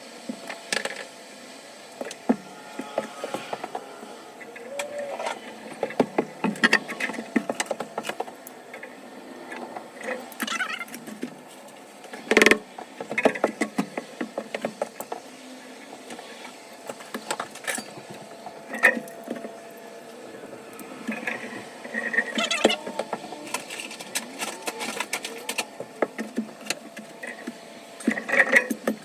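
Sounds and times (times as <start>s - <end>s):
hand tools clicking and scraping: 0.3s - 1.2s, 1.9s - 29.0s.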